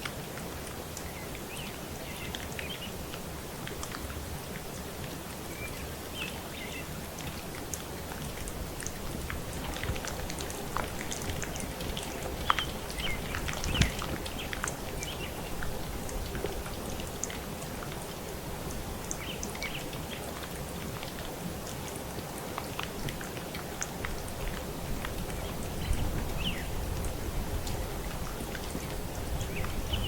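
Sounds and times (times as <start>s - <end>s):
steady rain falling: 0.0s - 30.0s
raindrop taps: 7.2s - 18.1s, 26.2s - 29.8s.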